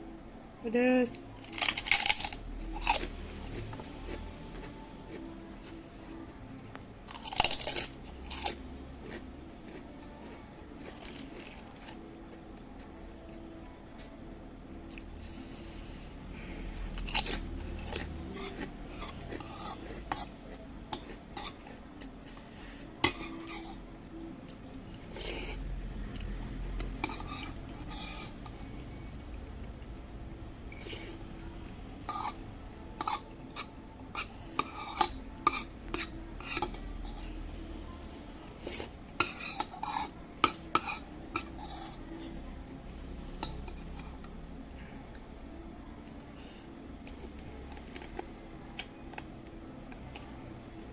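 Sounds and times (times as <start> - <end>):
cutlery clinking against bowl: 23.0 - 23.7, 33.0 - 37.3, 38.6 - 42.0.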